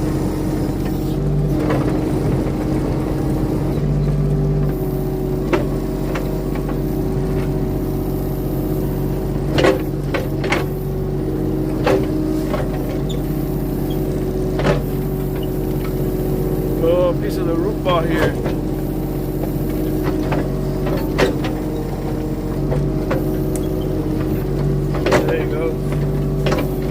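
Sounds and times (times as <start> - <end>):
diesel engine running: 0.0 - 26.9
machine knocks and clanks: 9.4 - 10.8, 11.7 - 16.0, 19.4 - 26.9.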